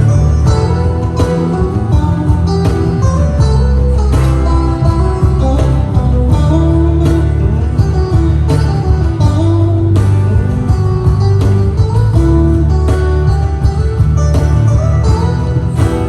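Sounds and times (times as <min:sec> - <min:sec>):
guitar: 0:00.0 - 0:16.0
percussive beat: 0:00.0 - 0:16.0
sustained bass line: 0:00.0 - 0:16.0.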